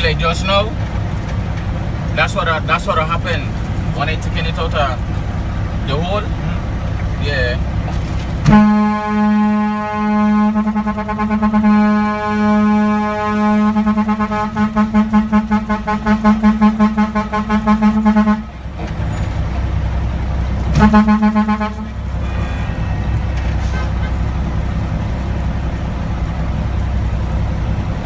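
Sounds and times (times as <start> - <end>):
diesel engine running: 0.0 - 28.0
truck air horn blast: 8.4 - 18.6, 20.7 - 24.2.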